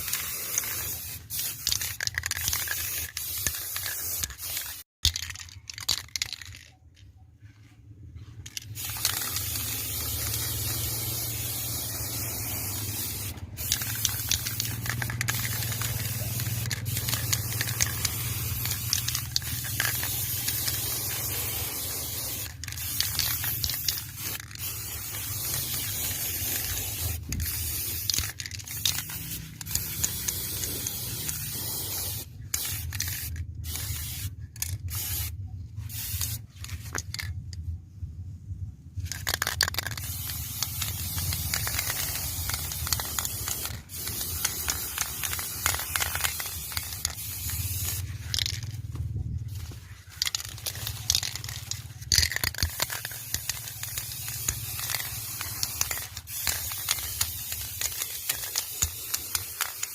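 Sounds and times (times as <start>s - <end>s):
hissing spray: 8.7s - 32.9s, 40.0s - 48.4s, 52.6s - 59.9s.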